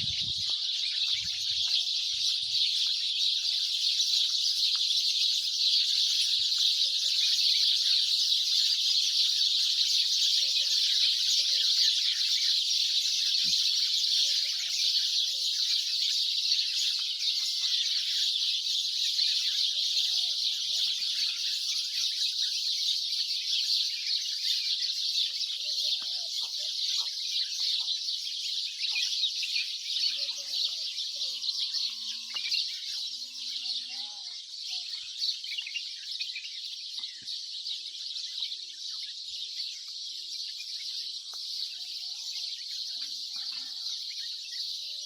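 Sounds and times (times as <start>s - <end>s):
many small birds chirping: 0.0s - 45.0s
fainter lower bird calls: 23.2s - 37.9s.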